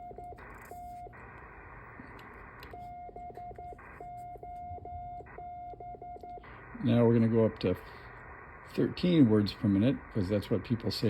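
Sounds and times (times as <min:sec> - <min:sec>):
morse code beeps: 0:00.0 - 0:01.4, 0:02.4 - 0:07.4
radio hiss: 0:00.0 - 0:11.0.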